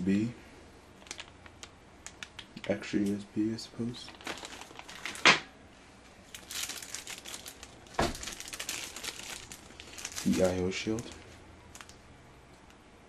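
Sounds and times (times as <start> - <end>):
plastic wrap crinkling: 1.0 - 5.5, 6.2 - 12.0.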